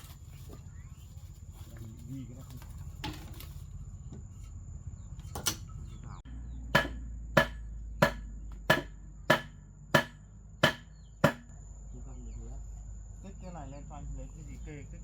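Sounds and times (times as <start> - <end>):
hammer striking timber: 6.7 - 11.5.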